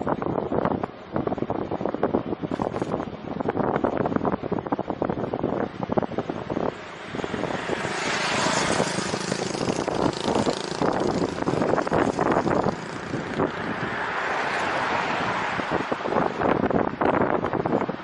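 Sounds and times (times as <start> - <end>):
road and traffic noise: 0.0 - 18.0
wind rushing over microphone: 0.0 - 18.0
bicycle rattling clatter: 8.2 - 13.4.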